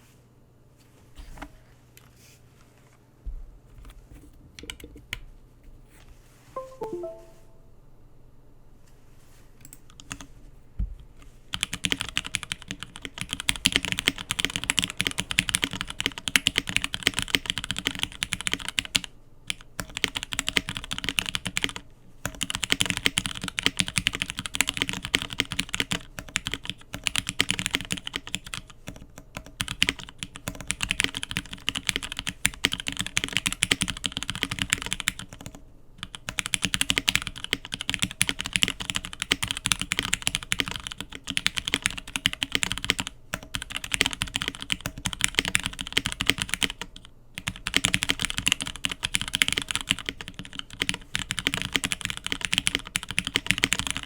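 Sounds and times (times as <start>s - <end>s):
mechanical keyboard typing: 11.5s - 54.0s.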